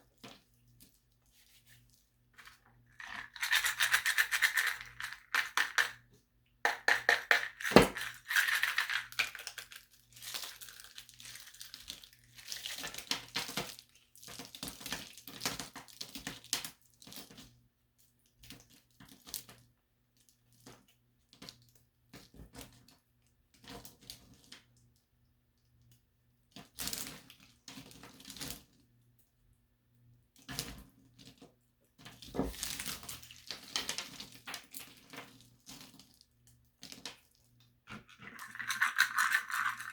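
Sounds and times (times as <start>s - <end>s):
plaster tiles crunching: 2.4s - 6.0s, 6.7s - 11.6s, 37.9s - 39.9s.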